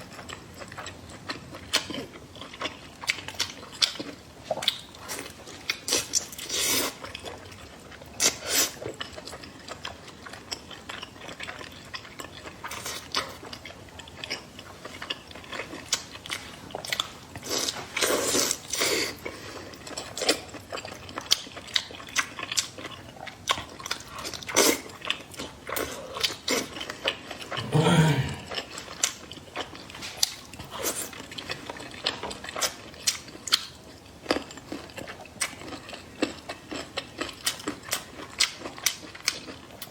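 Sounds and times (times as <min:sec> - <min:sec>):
person chewing food: 0:00.0 - 0:39.9
low voice hum: 0:27.6 - 0:28.6.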